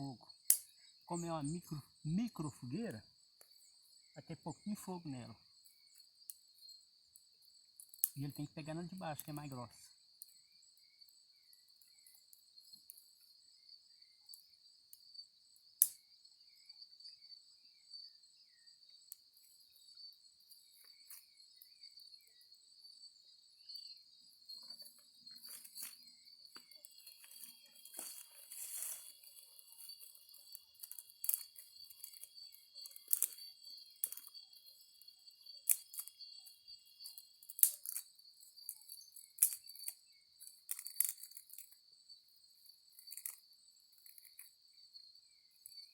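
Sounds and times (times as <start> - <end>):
crickets chirping: 0.0 - 45.9
campfire crackling: 0.3 - 10.4, 24.4 - 41.8, 42.8 - 44.5.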